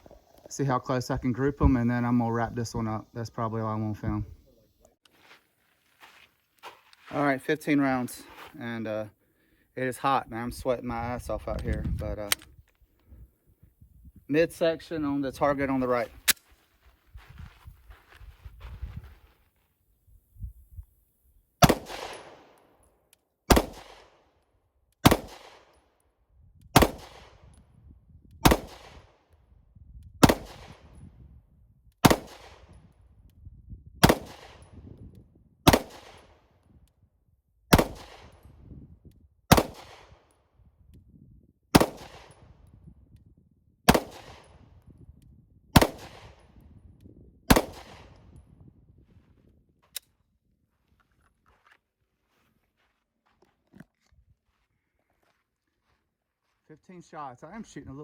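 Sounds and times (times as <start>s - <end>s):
pistol shots echoing: 21.6s - 22.6s, 23.5s - 24.1s, 25.0s - 25.7s, 35.7s - 36.2s, 39.5s - 40.0s, 41.8s - 42.4s, 43.9s - 44.5s, 45.8s - 46.4s, 47.5s - 48.1s.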